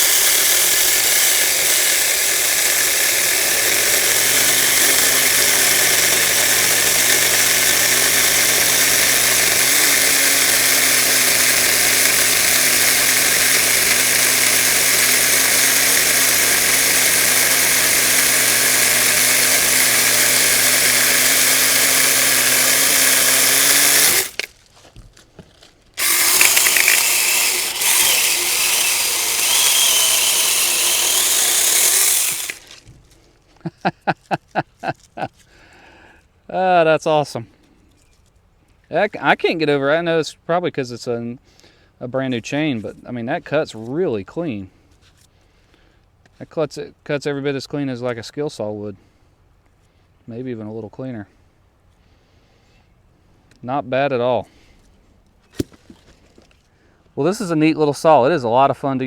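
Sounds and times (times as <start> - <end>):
electric chainsaw cutting wood: 0.0 - 24.5, 26.0 - 32.9.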